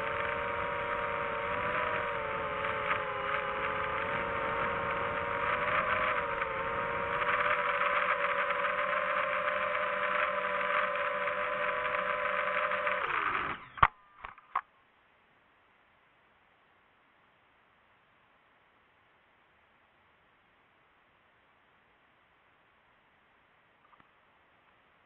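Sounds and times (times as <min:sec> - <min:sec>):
motor running with rattling: 0:00.0 - 0:14.6.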